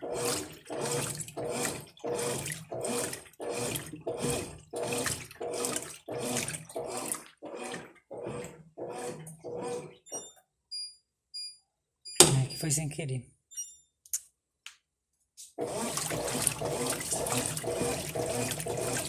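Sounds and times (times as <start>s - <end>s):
washing machine water sloshing: 0.0s - 10.0s, 15.6s - 19.0s.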